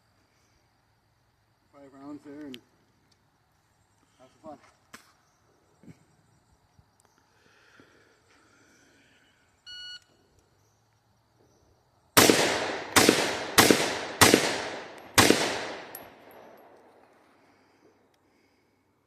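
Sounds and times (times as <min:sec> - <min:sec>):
rifle shots with echo: 0:12.2 - 0:17.0.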